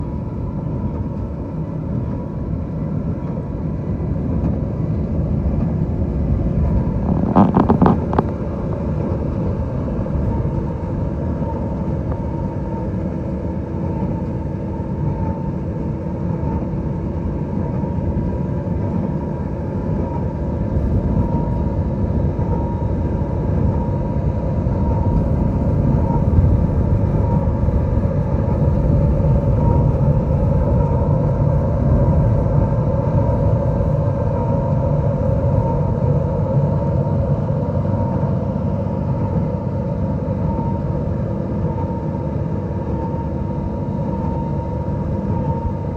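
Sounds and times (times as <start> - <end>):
tractor and baler droning: 0.0 - 45.9.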